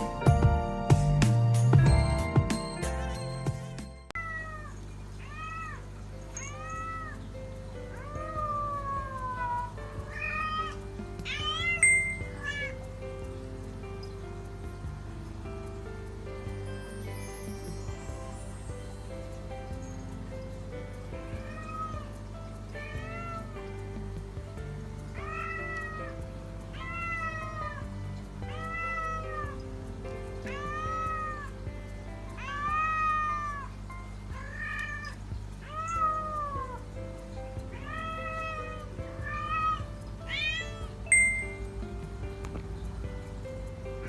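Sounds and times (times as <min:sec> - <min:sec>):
background music: 0:00.0 - 0:04.2, 0:06.2 - 0:44.0
cat meowing: 0:04.2 - 0:07.2, 0:07.9 - 0:12.9, 0:21.3 - 0:22.1, 0:22.8 - 0:23.6, 0:25.2 - 0:27.9, 0:28.5 - 0:29.6, 0:30.4 - 0:31.6, 0:32.3 - 0:36.9, 0:37.7 - 0:41.6.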